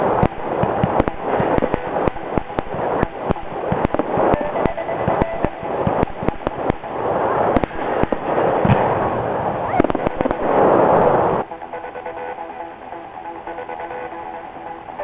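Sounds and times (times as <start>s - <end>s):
dense hissing rush: 0.0s - 15.0s
fireworks bangs and crackling: 0.0s - 15.0s
music with guitar: 4.3s - 5.8s.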